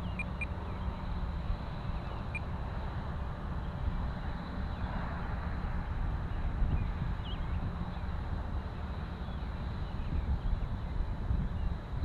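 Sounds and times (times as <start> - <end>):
high bird chirp: 0.0 - 0.5.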